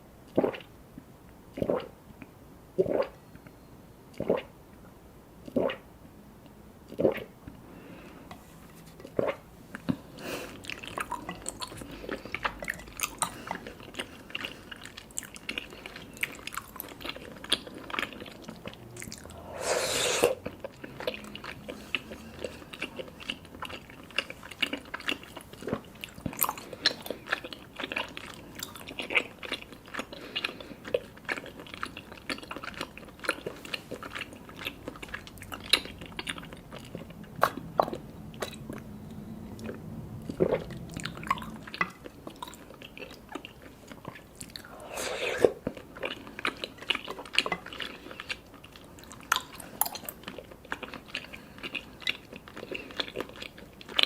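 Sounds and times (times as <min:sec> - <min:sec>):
slurp through a straw: 0:01.6 - 0:01.9, 0:05.4 - 0:05.8, 0:19.3 - 0:23.5, 0:44.6 - 0:48.4
chewing sticky food: 0:06.4 - 0:54.0
wet mouth clicks: 0:35.4 - 0:38.9.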